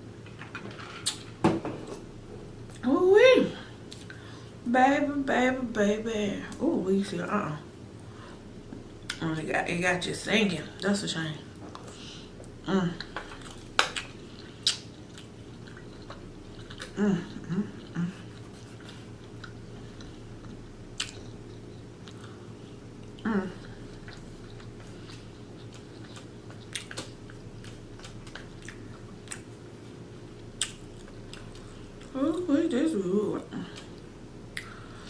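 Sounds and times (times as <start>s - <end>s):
faint steady hum: 0.0s - 35.0s
person chewing food: 11.6s - 32.1s
wet mouth clicks: 14.0s - 14.9s
person humming mm: 16.9s - 18.4s.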